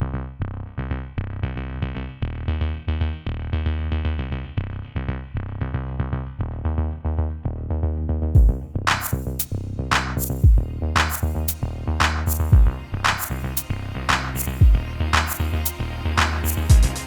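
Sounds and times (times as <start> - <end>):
deep bass line: 0.0 - 17.0
drum machine beat: 8.4 - 17.0
synthesizer riff: 10.4 - 17.0.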